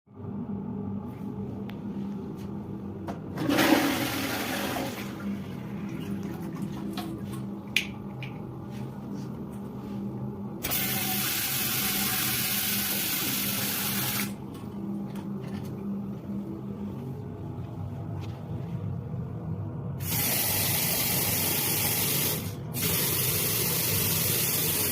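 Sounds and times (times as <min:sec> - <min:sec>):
low hum: 0:00.1 - 0:10.7, 0:14.4 - 0:20.0
water gushing through pipes: 0:03.4 - 0:07.2.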